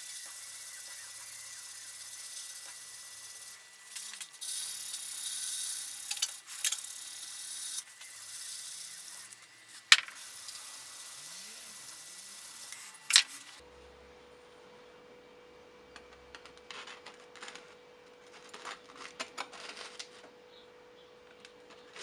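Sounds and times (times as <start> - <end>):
high-pitched scraping hiss on steel: 0.0 - 13.6.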